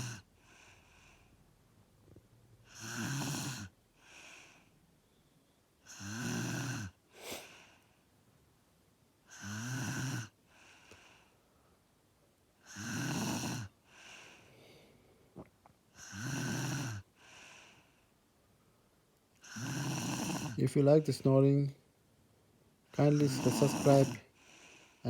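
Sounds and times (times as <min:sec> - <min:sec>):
man snoring heavily: 0:00.0 - 0:01.2, 0:02.7 - 0:04.6, 0:05.9 - 0:07.6, 0:09.3 - 0:10.4, 0:12.6 - 0:14.3, 0:16.0 - 0:17.6, 0:19.4 - 0:20.6, 0:23.0 - 0:25.0
soft breathing: 0:00.0 - 0:01.6, 0:04.0 - 0:04.8, 0:07.1 - 0:08.1, 0:10.4 - 0:11.9, 0:13.8 - 0:15.6, 0:17.1 - 0:19.0, 0:23.0 - 0:25.0.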